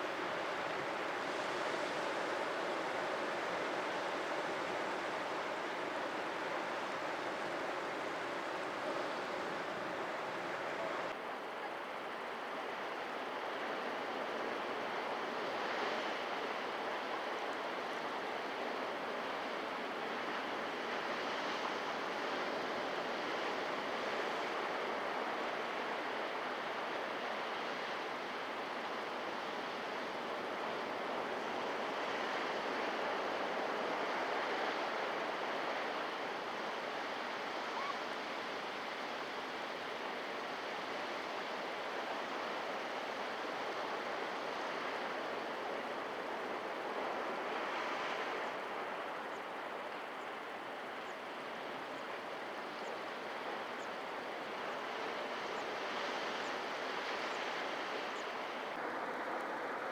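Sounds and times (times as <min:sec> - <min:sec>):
ocean waves breaking: 0:00.1 - 0:11.1.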